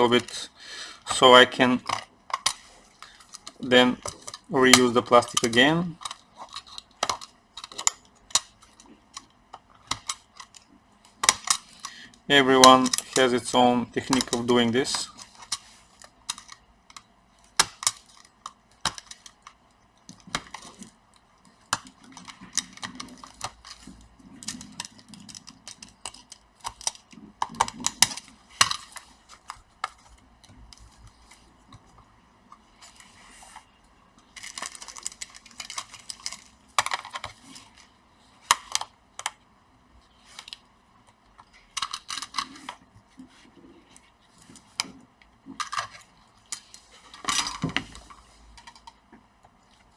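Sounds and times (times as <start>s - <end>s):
sharp plastic clicks: 12.6s - 20.9s.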